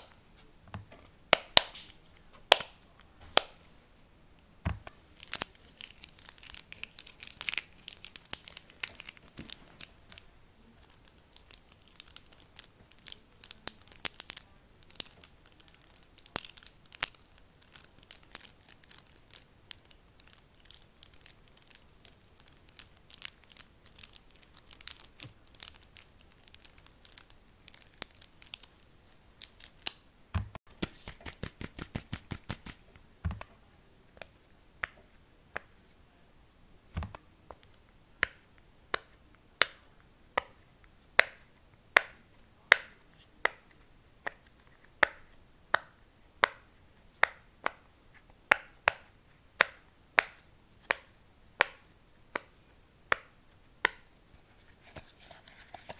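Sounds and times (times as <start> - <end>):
crinkling: 4.6 - 35.9, 53.6 - 55.9.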